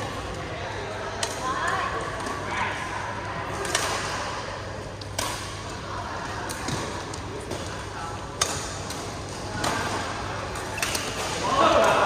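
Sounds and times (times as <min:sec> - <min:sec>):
rackets hitting shuttlecock: 0:08.4 - 0:12.0.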